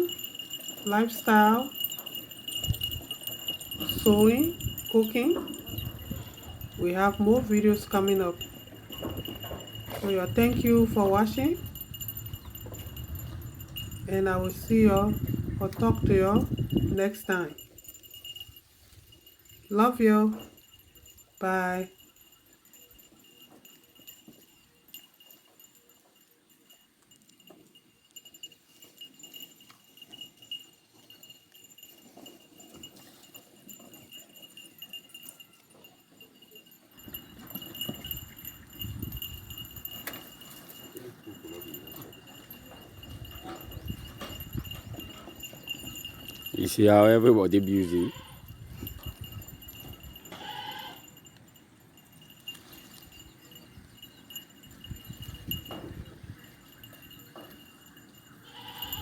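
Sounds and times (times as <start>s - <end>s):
goats moving about: 0.0s - 21.4s, 22.0s - 59.0s
goat bleating: 47.8s - 48.4s, 50.3s - 51.1s, 58.4s - 59.0s.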